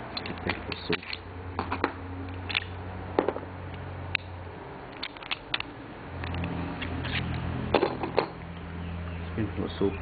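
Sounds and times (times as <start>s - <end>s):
small plastic parts clicking: 0.2s - 2.8s, 4.9s - 7.2s.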